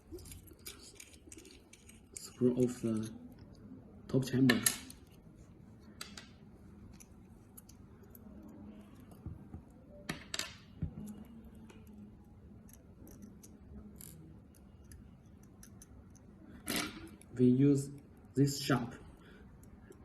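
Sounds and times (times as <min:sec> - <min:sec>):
small metal parts clicking: 0:00.0 - 0:03.1, 0:06.9 - 0:09.1, 0:12.6 - 0:17.3.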